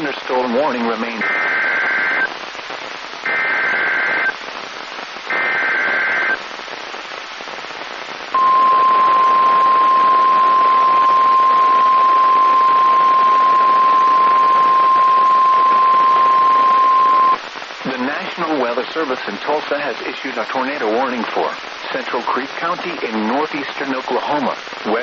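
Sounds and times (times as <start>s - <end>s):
radio static: 0.0s - 25.0s
steady warning alarm tone: 8.4s - 17.4s
two-tone data warble: 8.4s - 17.4s.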